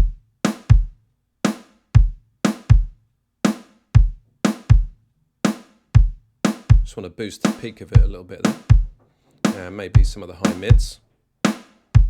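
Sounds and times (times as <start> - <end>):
deep kick drum hits: 6.0 - 6.9, 8.0 - 8.9.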